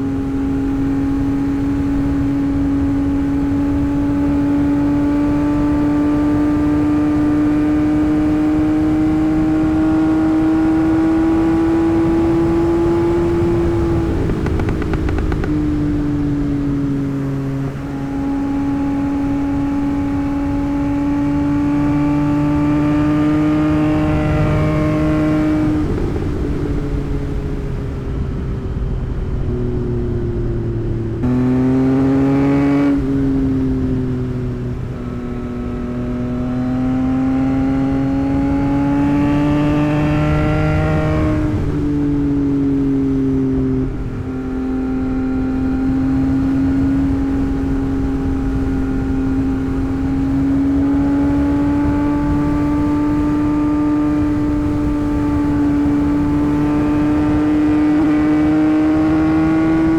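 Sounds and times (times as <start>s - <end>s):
motorcycle engine pulling under load: 9.3s - 16.7s.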